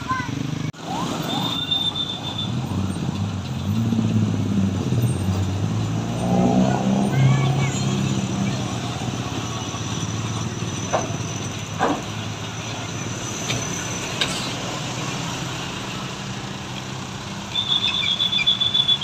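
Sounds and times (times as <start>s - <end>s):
diesel truck engines humming: 0.0s - 19.0s.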